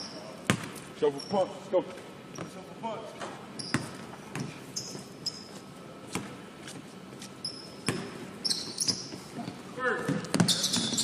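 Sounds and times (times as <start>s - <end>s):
basketballs bouncing on hardwood: 0.5s - 0.8s, 3.7s - 4.6s, 7.8s - 8.2s, 8.8s - 11.0s
shoe squeaks on floor: 3.6s - 4.0s, 4.7s - 5.7s, 7.4s - 9.4s, 10.4s - 11.0s.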